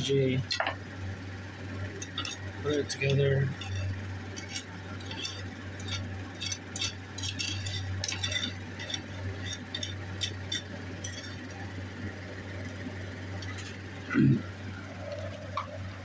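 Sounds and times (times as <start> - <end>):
steady low hum: 0.0 - 16.0
metal pieces clinking: 2.0 - 11.5.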